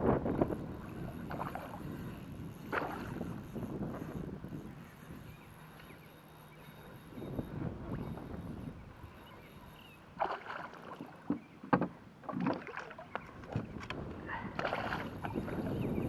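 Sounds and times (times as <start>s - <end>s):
water splashing against kayak: 0.0s - 1.8s, 10.2s - 15.9s.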